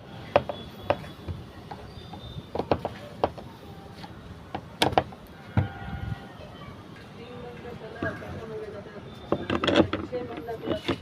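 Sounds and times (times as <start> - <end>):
sharp clicks and knocks: 4.5 - 5.2.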